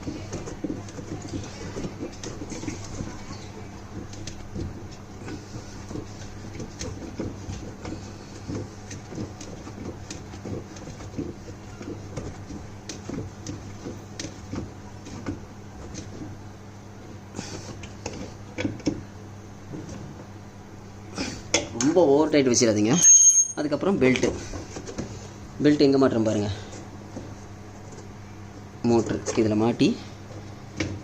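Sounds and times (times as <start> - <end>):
steady low hum: 0.0 - 31.0.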